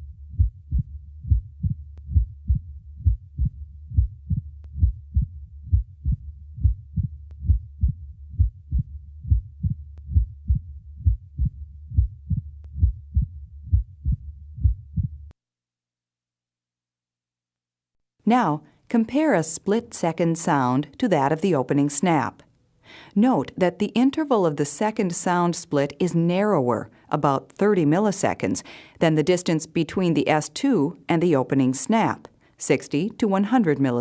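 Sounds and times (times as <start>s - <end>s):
heartbeat through stethoscope: 0.0s - 15.4s.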